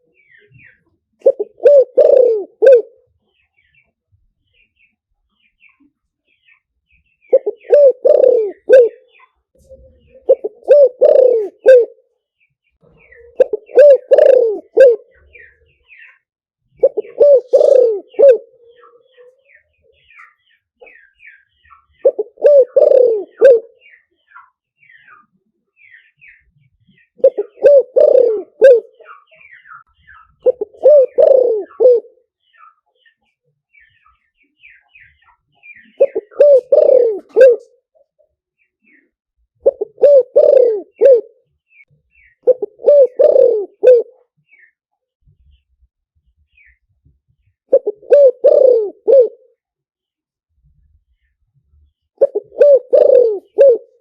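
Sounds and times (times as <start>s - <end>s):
dove cooing: 0.0s - 3.1s, 7.3s - 12.0s, 13.0s - 16.2s, 16.8s - 24.0s, 27.2s - 32.3s, 35.6s - 38.1s, 39.6s - 41.4s, 42.3s - 44.3s, 47.7s - 49.6s, 52.2s - 54.0s
small birds chirping: 0.0s - 54.0s.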